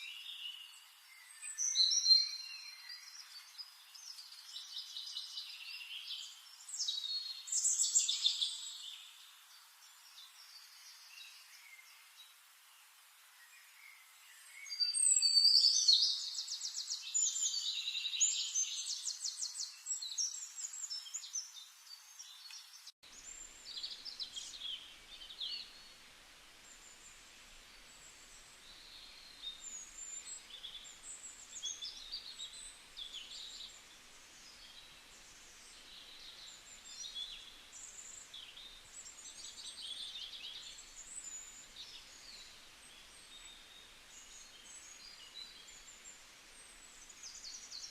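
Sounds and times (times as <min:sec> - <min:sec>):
faint background hiss: 0:00.0 - 0:47.9
bird trilling song: 0:14.6 - 0:21.5.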